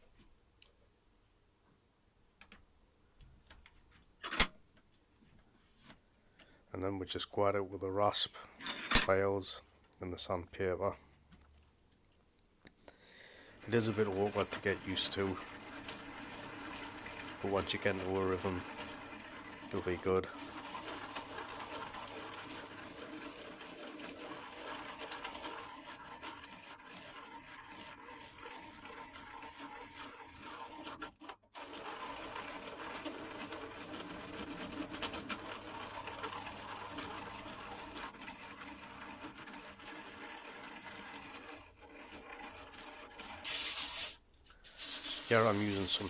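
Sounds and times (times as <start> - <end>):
hand drill whirring: 13.5 - 46.0
rasp scraping wood: 13.6 - 19.8, 20.4 - 46.0.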